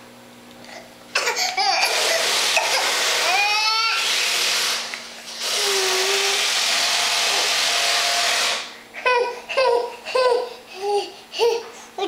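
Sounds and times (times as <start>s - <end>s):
power screwdriver running: 1.8s - 8.7s
baby yelling: 9.0s - 11.7s.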